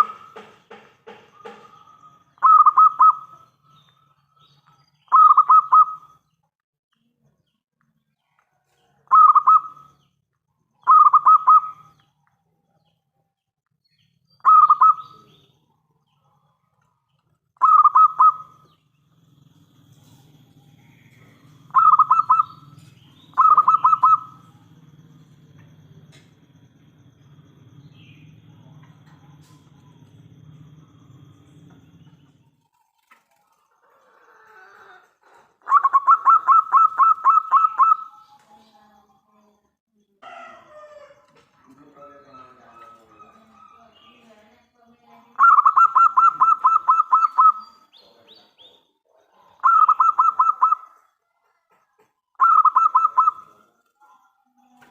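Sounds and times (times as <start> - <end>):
dove cooing: 0.0 - 3.6, 5.0 - 6.2, 9.0 - 10.0, 10.8 - 11.9, 14.4 - 15.4, 17.6 - 18.8, 19.7 - 24.7, 33.4 - 38.2, 40.3 - 44.2, 45.4 - 53.8
faint low hum: 18.4 - 34.7.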